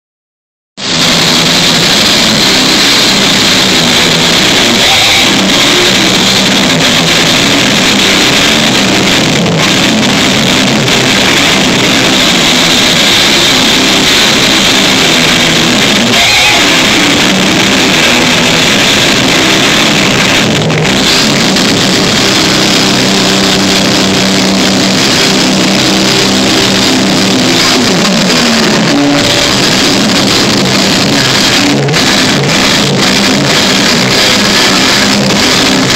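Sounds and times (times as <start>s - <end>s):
distorted rock band playing: 0.8s - 35.9s.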